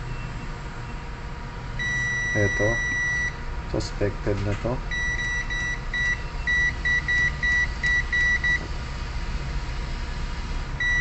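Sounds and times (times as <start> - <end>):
multimeter continuity beeps: 1.8 - 3.4, 4.9 - 8.6, 10.8 - 11.0.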